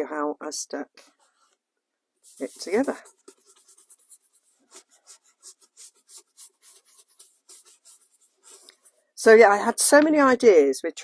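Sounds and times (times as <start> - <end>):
ink pad scratching on paper: 2.2 - 9.0.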